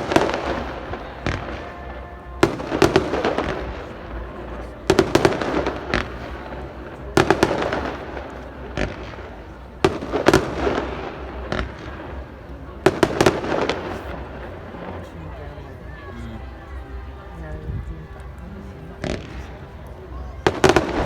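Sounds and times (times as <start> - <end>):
fireworks bangs echoing: 0.0 - 15.0, 20.4 - 21.0.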